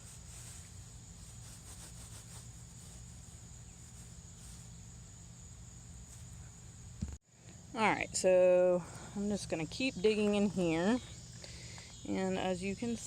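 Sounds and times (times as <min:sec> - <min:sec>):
faint rustles: 0:00.0 - 0:05.0, 0:05.9 - 0:06.7
crickets chirring: 0:00.0 - 0:13.0.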